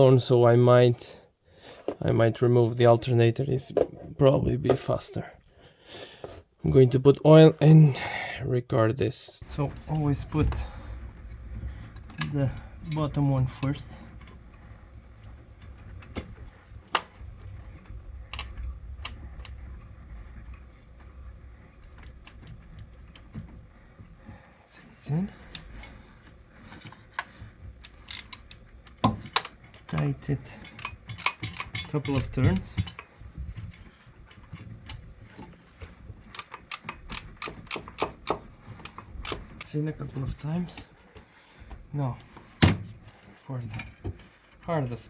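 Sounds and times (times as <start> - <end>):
metal clicks and knocks: 26.8 - 39.8
ratchet wrench clicking: 28.0 - 28.6, 30.7 - 32.8, 36.3 - 39.7.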